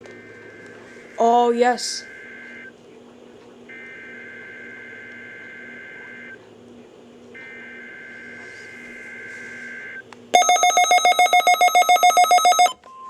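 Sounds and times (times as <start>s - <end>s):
two-pitch data tone bursts: 9.8s - 12.8s.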